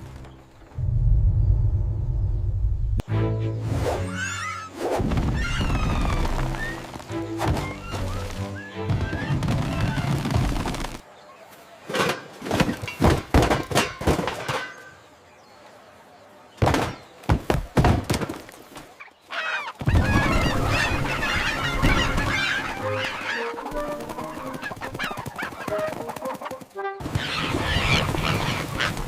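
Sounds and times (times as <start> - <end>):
geese honking and squawking: 19.3 - 29.0.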